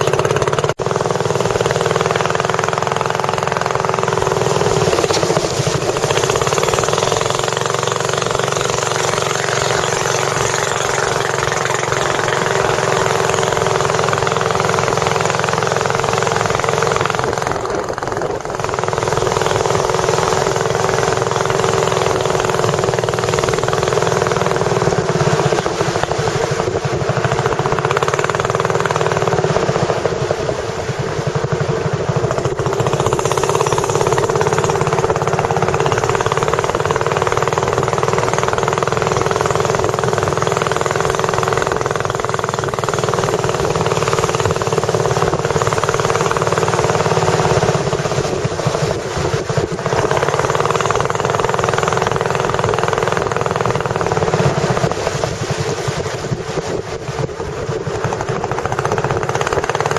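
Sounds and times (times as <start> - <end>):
boat engine droning: 0.0 - 59.9.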